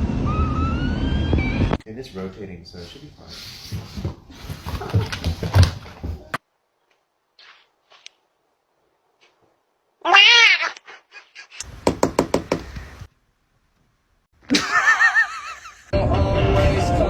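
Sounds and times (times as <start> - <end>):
cat meowing: 10.0 - 11.6
music: 16.0 - 17.0.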